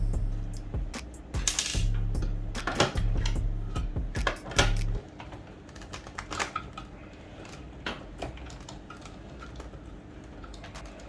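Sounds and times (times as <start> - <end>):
low hum: 0.0 - 5.0.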